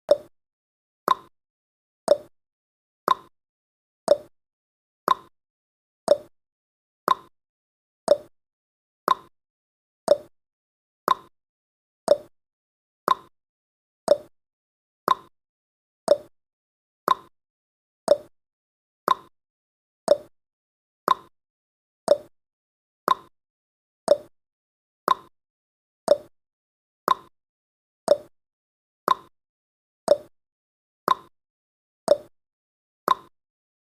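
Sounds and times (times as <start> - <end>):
timer ticking: 0.1 - 0.3, 1.1 - 1.3, 2.1 - 2.3, 3.1 - 3.3, 4.1 - 4.3, 5.1 - 5.3, 6.1 - 6.3, 7.1 - 7.3, 8.1 - 8.3, 9.1 - 9.3, 10.1 - 10.3, 11.1 - 11.3, 12.1 - 12.3, 13.1 - 13.3, 14.1 - 14.3, 15.1 - 15.3, 16.1 - 16.3, 17.1 - 17.3, 18.1 - 18.3, 19.1 - 19.3, 20.1 - 20.3, 21.1 - 21.3, 22.1 - 22.3, 23.1 - 23.3, 24.1 - 24.3, 25.1 - 25.3, 26.1 - 26.3, 27.1 - 27.3, 28.1 - 28.3, 29.1 - 29.3, 30.1 - 30.3, 31.1 - 31.3, 32.1 - 32.3, 33.1 - 33.3.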